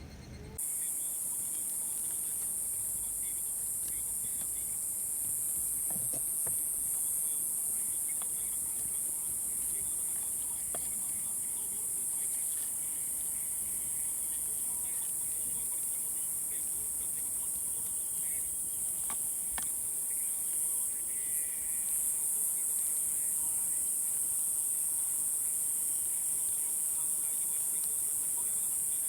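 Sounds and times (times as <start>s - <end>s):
steady high-pitched hiss: 0.0s - 29.0s.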